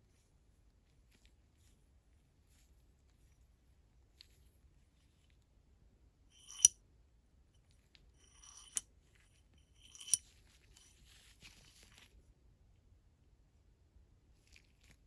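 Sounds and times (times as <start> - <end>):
metal sliding on metal: 6.4 - 6.7, 8.3 - 8.8, 9.8 - 10.2
sharp click with metallic ring: 6.4 - 6.7, 8.3 - 8.8, 9.8 - 10.2.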